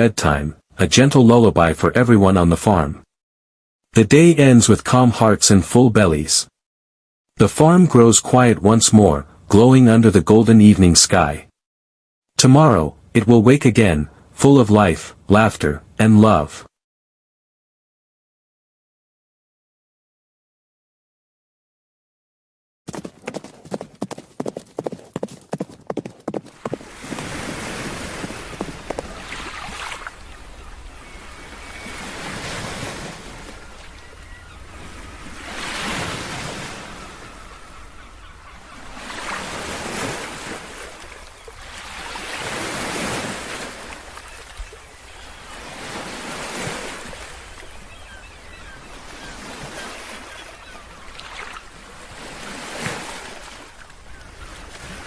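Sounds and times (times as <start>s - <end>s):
horse hooves clopping: 22.9s - 29.3s
waves washing in: 26.6s - 55.0s.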